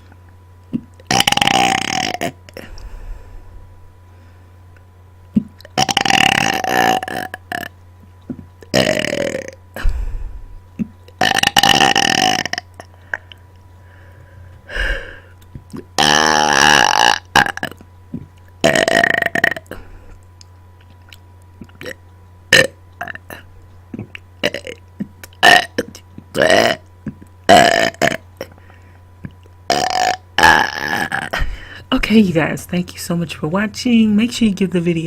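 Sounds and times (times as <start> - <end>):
person burping: 0.8 - 2.7, 5.6 - 7.7, 8.7 - 9.9, 10.8 - 13.3, 15.7 - 19.9, 21.6 - 26.8, 27.5 - 28.5, 29.7 - 31.5.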